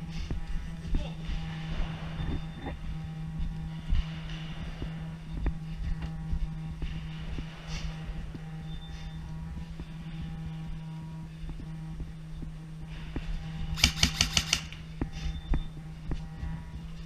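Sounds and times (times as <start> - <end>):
steady low hum: 0.0 - 17.0
airsoft gun full-auto burst: 13.8 - 14.8.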